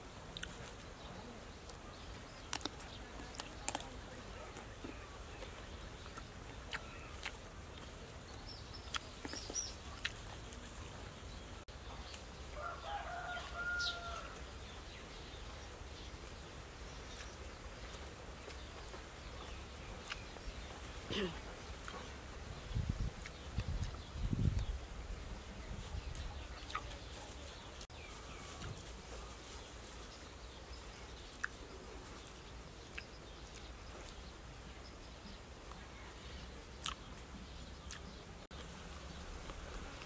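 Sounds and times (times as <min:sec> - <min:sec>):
rooster crowing: 0:12.5 - 0:14.4.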